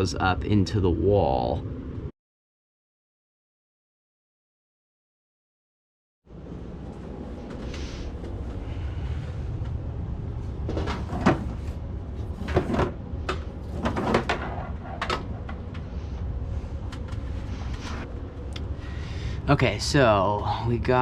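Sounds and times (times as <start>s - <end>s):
steady low rumble: 0.0s - 2.1s, 6.3s - 21.0s.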